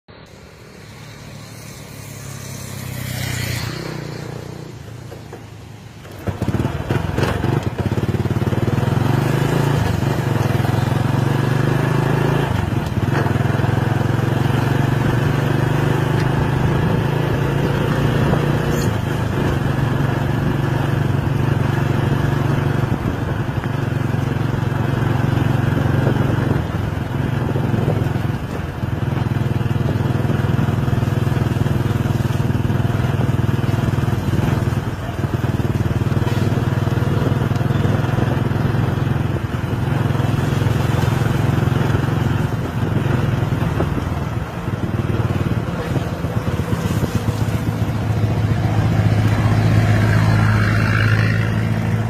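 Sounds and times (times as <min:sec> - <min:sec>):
rushing noise: 0:00.1 - 0:07.3, 0:38.7 - 0:52.0
engine running steadily: 0:00.1 - 0:52.0.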